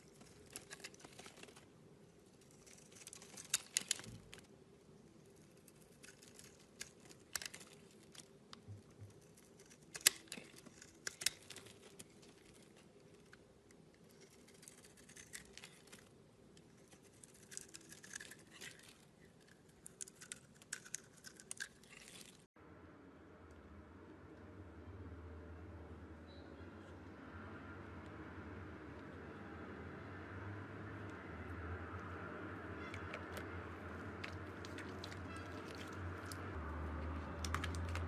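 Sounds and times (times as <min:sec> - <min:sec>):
light crackling and clicking: 0:05.3 - 0:22.5.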